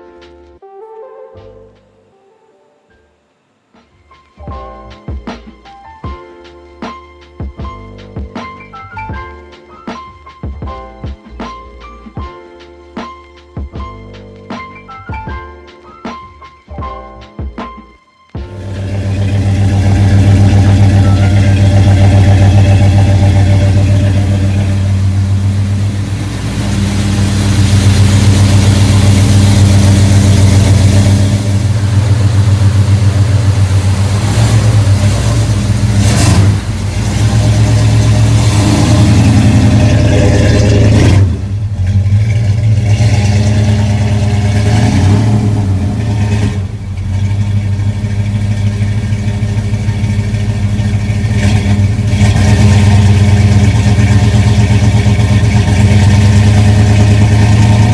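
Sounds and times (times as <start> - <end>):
engine revving loudly: 18.5 - 57.9.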